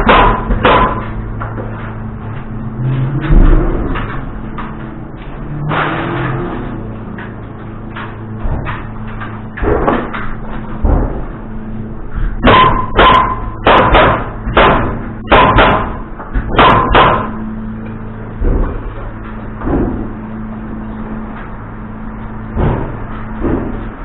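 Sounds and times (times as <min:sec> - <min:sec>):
hammer striking nails into wood: 0:12.4 - 0:17.3.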